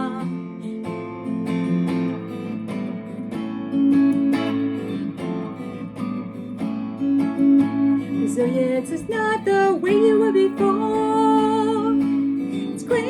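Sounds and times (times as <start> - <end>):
guitar strummed: 0.0 - 13.0.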